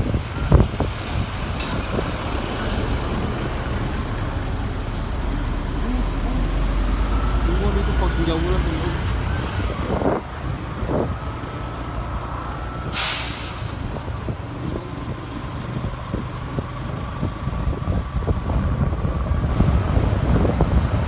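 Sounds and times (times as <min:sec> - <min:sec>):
bus engine rumbling: 0:00.0 - 0:21.0
air brakes hissing: 0:12.8 - 0:14.3.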